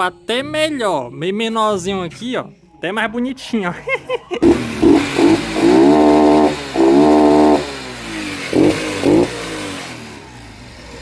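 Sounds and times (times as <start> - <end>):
motorcycle engine revving: 4.4 - 11.0.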